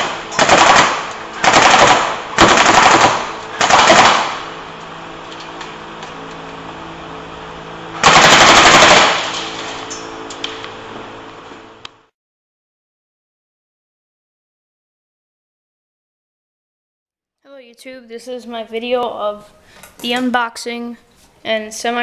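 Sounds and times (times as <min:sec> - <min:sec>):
rifle firing automatic bursts: 0:00.0 - 0:04.4, 0:08.0 - 0:09.4
low steady hum: 0:00.0 - 0:12.1.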